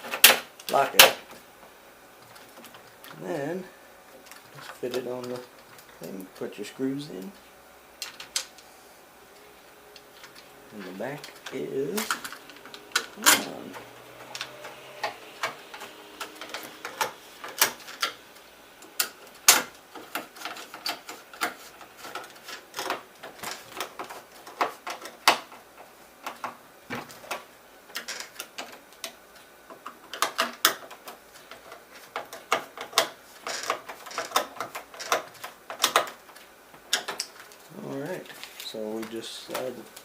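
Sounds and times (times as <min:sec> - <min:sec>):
lock parts clicking and tapping: 0:18.8 - 0:37.6.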